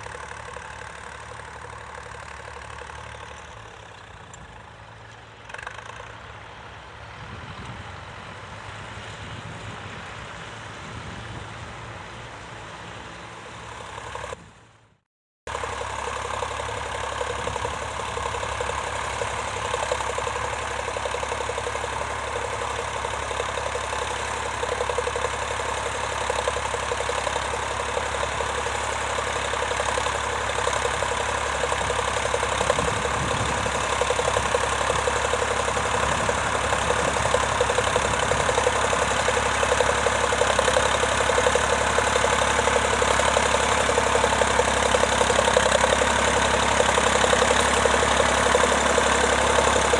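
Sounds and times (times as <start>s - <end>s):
tractor engine running: 0.0s - 14.9s, 15.5s - 49.9s.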